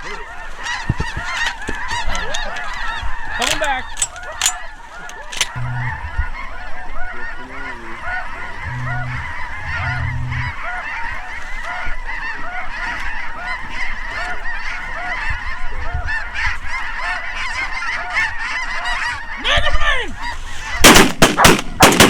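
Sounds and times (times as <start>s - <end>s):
geese honking: 0.0s - 21.5s
low steady tone: 5.6s - 6.2s, 8.6s - 10.6s
shotgun shots: 20.8s - 22.0s.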